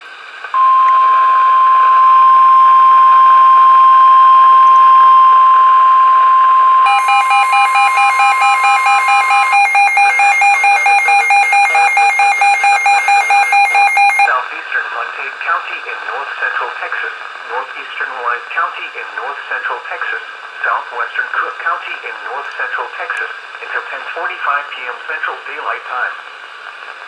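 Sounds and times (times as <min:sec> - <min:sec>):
steady warning alarm tone: 0:00.6 - 0:14.3
rapid electronic alarm beeping: 0:06.8 - 0:14.3.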